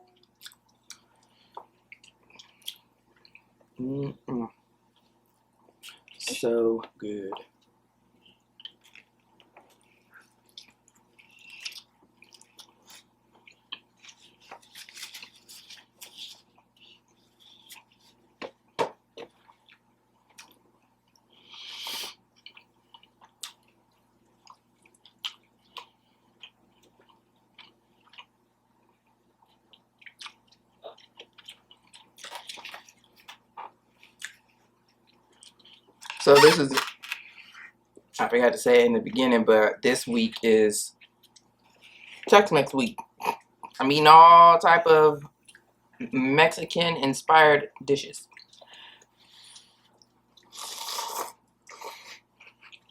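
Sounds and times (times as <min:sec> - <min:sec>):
faint steady hum: 0:00.0 - 0:52.9
chewing and wet mouth sounds: 0:00.2 - 0:03.8, 0:04.8 - 0:06.4, 0:07.3 - 0:36.3, 0:40.3 - 0:42.3, 0:45.4 - 0:45.7, 0:48.2 - 0:52.9.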